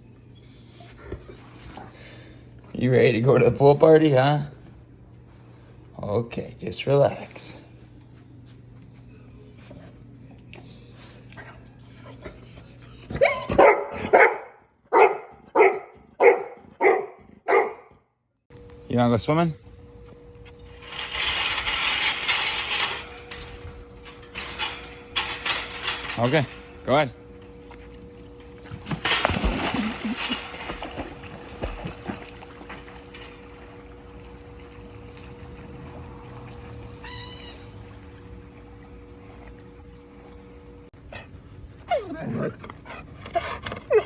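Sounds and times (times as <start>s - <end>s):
dog barking: 13.2s - 18.0s
water sloshing and splattering: 27.3s - 39.9s
dog splashing into pool: 28.7s - 38.7s.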